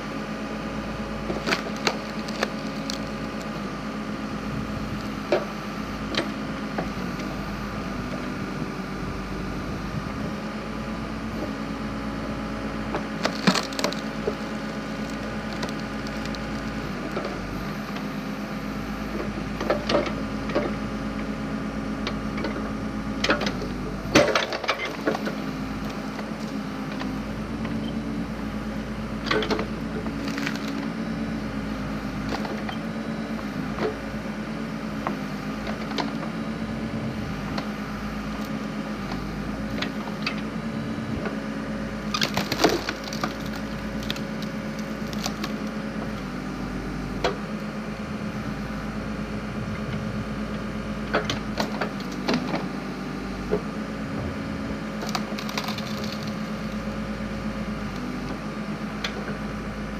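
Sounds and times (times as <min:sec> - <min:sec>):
backhoe engine running: 0:00.0 - 0:59.9
wood cracking and splintering: 0:01.2 - 0:03.8, 0:12.8 - 0:18.2, 0:23.2 - 0:27.8, 0:29.2 - 0:31.0, 0:32.1 - 0:32.8, 0:42.0 - 0:46.5, 0:51.1 - 0:52.7, 0:53.5 - 0:57.0.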